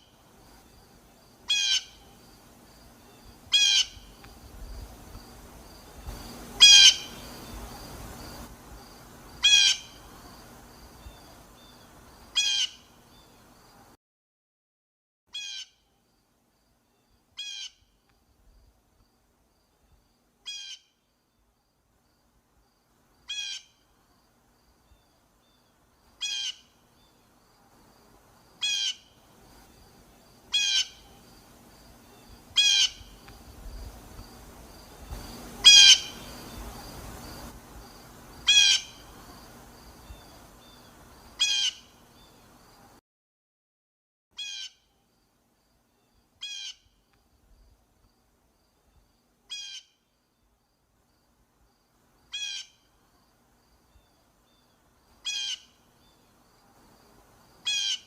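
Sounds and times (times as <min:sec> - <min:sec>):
low rumbling background noise: 0:00.2 - 0:13.9
blue jay calling: 0:01.5 - 0:02.2, 0:03.5 - 0:04.2, 0:06.6 - 0:07.6, 0:09.4 - 0:10.1, 0:12.4 - 0:12.9, 0:15.3 - 0:15.8, 0:17.4 - 0:17.9, 0:20.4 - 0:21.0, 0:23.3 - 0:23.8, 0:26.2 - 0:26.8, 0:28.6 - 0:29.2, 0:30.5 - 0:31.2, 0:32.5 - 0:33.2, 0:35.6 - 0:36.6, 0:38.4 - 0:39.1, 0:41.4 - 0:42.0, 0:44.4 - 0:44.9, 0:46.4 - 0:47.0, 0:49.5 - 0:50.0, 0:52.3 - 0:52.8, 0:55.2 - 0:55.9, 0:57.6 - 0:58.0.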